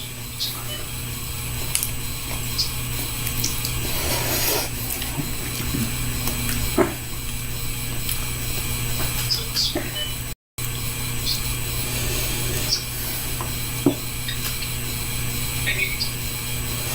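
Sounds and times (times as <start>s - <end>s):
background hum: 0.0s - 16.9s
slurping noodles: 3.1s - 7.1s, 11.8s - 13.6s.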